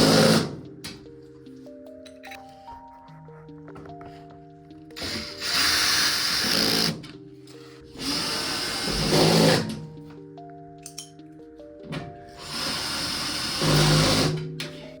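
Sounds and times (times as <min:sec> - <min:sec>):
cordless drill driving screws: 0:00.0 - 0:00.6, 0:05.0 - 0:07.0, 0:08.0 - 0:09.8, 0:12.4 - 0:14.5
background music: 0:00.0 - 0:15.0.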